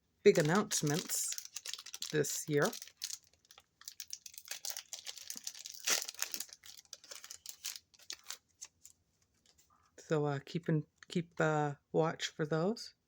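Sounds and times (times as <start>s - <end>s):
foil wrapper crinkling and tearing: 0.3s - 8.8s.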